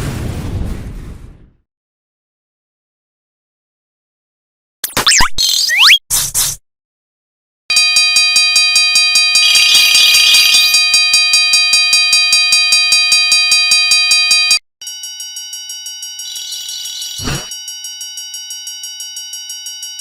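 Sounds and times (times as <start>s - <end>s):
level-crossing bell ringing fast: 7.7s - 20.0s
quieter crossing bell ringing: 7.7s - 20.0s.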